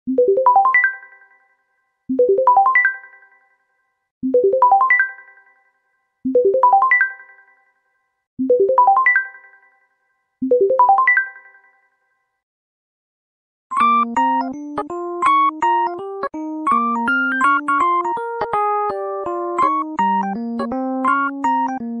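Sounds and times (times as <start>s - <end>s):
mobile phone ringtone: 13.7s - 22.0s.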